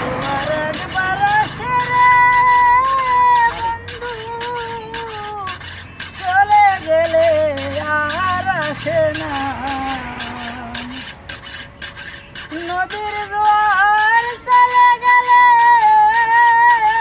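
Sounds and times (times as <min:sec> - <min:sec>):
hand file rasping on metal: 0:00.0 - 0:17.0
man singing folk song: 0:06.2 - 0:11.0.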